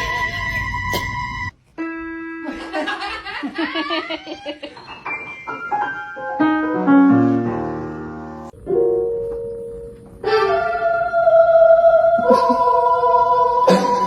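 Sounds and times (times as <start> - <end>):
piano notes: 1.8 - 3.2, 4.7 - 10.9.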